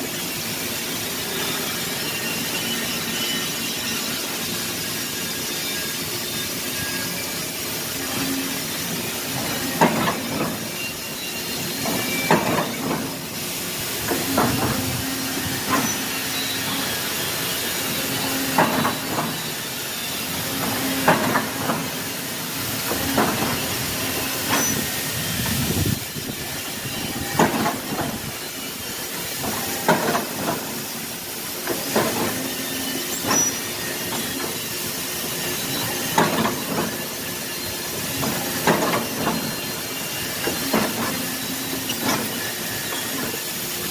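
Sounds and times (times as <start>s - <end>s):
machine hiss: 0.0s - 43.9s
machine knocks: 14.1s - 15.0s, 18.5s - 19.4s, 22.9s - 23.6s, 27.2s - 28.2s, 29.5s - 30.7s.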